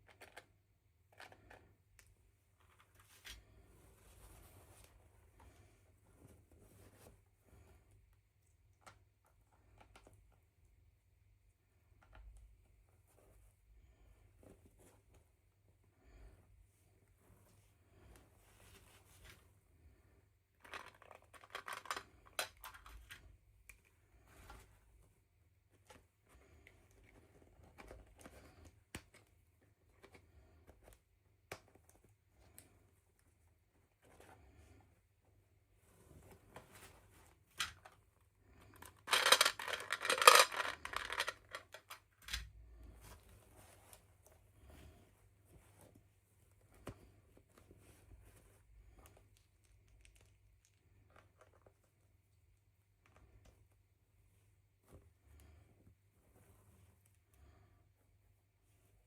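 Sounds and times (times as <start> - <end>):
packaging rustling: 38.8 - 42.4
small objects clicking: 38.9 - 42.4.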